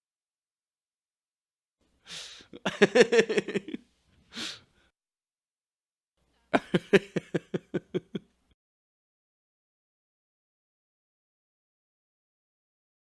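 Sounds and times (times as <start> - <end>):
sharp breath in: 2.0 - 2.6, 4.3 - 4.9
man laughing: 2.1 - 3.8, 6.6 - 8.3.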